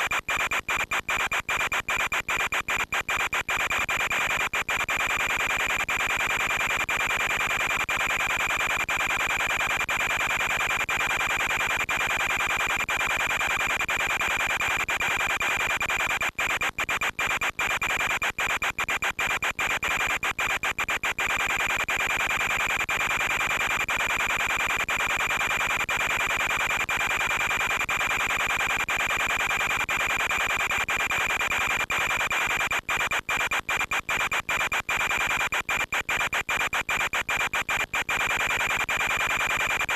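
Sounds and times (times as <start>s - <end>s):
radio static hiss: 27.4s - 39.9s.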